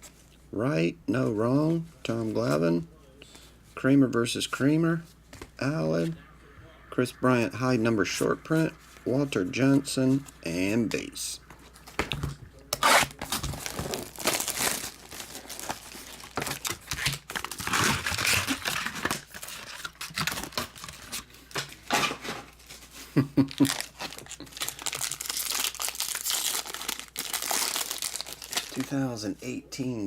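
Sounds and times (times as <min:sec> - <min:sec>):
plastic wrapping crinkling and tearing: 0:11.4 - 0:21.8, 0:22.6 - 0:29.0.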